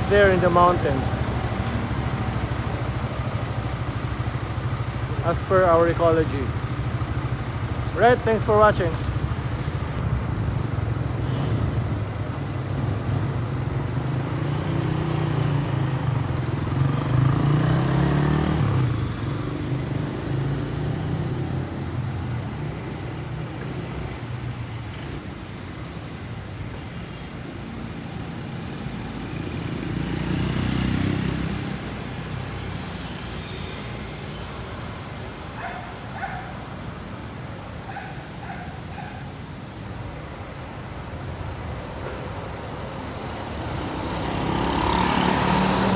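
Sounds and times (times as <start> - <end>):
steady traffic rumble: 0.0 - 45.9
vehicles passing: 0.0 - 45.9.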